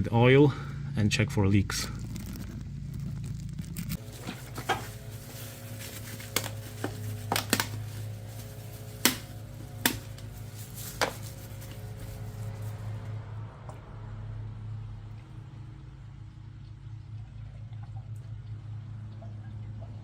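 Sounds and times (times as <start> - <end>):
steady low hum: 0.0 - 20.0
clicks and knocks of oil bottles: 4.0 - 12.4.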